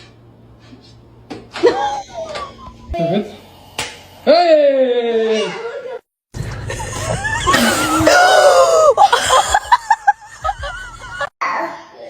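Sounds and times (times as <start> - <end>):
person laughing: 1.6 - 3.4, 6.7 - 11.3
person screaming: 7.6 - 9.0.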